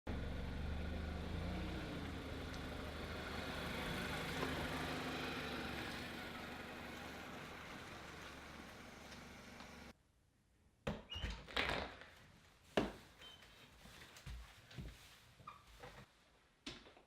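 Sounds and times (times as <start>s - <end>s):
low engine-like rumble: 0.1s - 9.9s.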